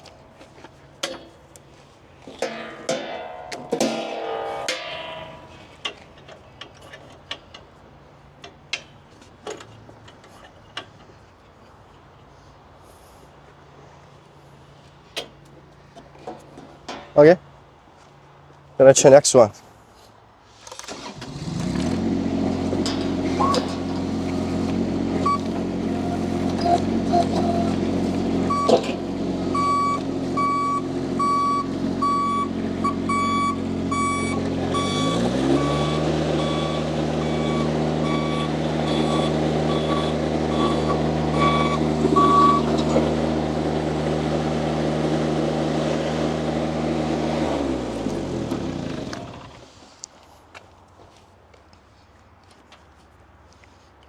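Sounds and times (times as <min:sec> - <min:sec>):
loader engine running: 0:00.0 - 0:11.0, 0:20.9 - 0:49.8
backup alarm beeping: 0:23.4 - 0:42.9.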